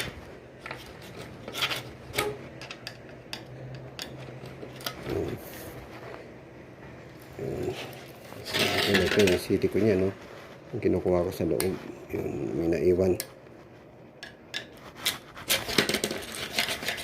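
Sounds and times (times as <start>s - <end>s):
hand tool scraping and clicking: 14.2s - 17.0s.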